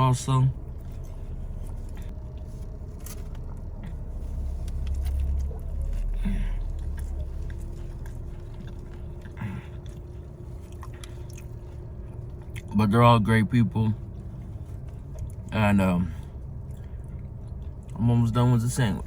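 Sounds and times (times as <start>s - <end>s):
low steady rumble: 0.0s - 19.0s
person chewing food: 0.7s - 12.7s, 14.1s - 15.5s, 16.2s - 18.0s.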